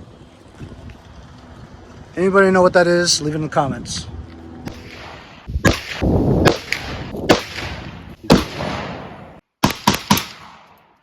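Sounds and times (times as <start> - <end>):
echoing gunshots: 4.7 - 11.0.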